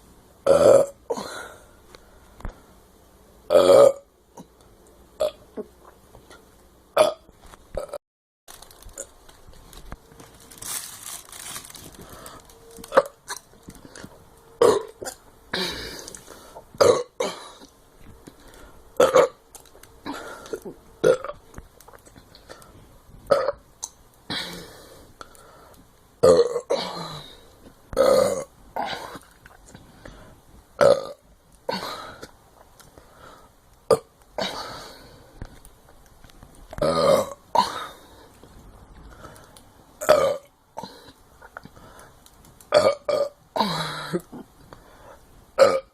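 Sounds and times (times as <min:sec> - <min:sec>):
person burping: 0:00.4 - 0:01.5, 0:03.5 - 0:04.5, 0:07.0 - 0:08.0, 0:14.6 - 0:16.2, 0:16.8 - 0:17.7, 0:19.0 - 0:19.4, 0:20.0 - 0:21.4, 0:23.3 - 0:23.6, 0:26.2 - 0:27.3, 0:28.0 - 0:29.2, 0:30.8 - 0:32.2, 0:33.9 - 0:34.8, 0:36.8 - 0:38.0, 0:40.0 - 0:41.2, 0:42.7 - 0:44.5, 0:45.6 - 0:45.9.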